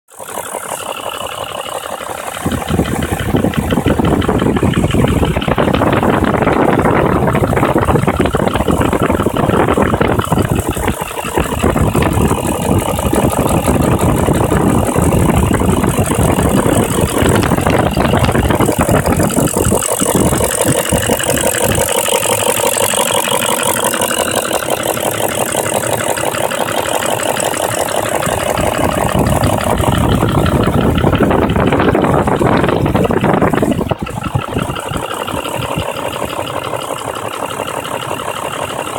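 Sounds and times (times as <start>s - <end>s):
car engine running: 0.1s - 38.9s
fast metallic engine rattle: 0.1s - 38.9s.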